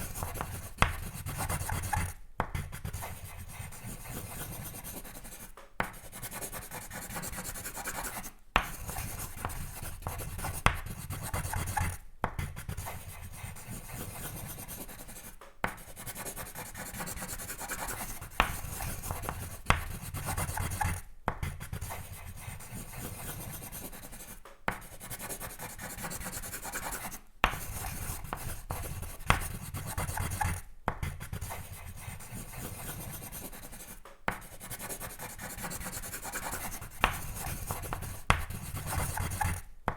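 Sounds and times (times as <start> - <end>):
drawing tool scratching paper: 0.0 - 39.7
tool tapping on paper: 5.5 - 6.0, 8.6 - 11.0, 18.3 - 20.0, 27.4 - 29.6, 34.0 - 34.5, 36.8 - 39.9.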